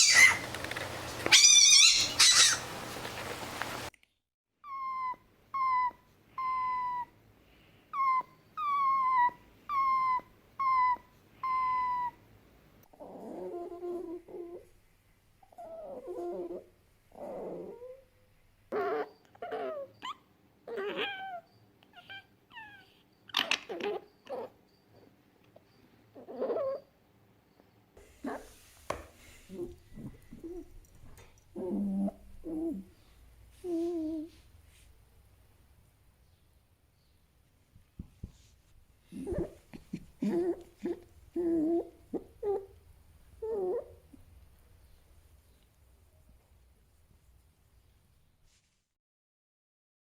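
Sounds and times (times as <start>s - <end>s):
fox calls: 0.0s - 3.0s.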